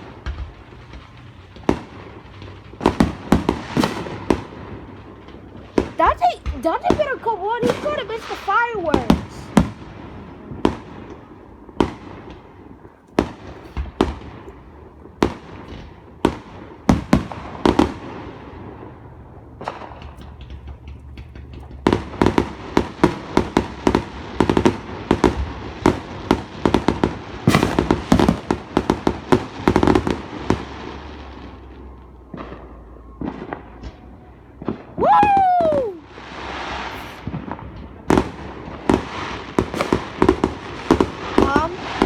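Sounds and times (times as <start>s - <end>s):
fireworks exploding: 0.0s - 42.0s.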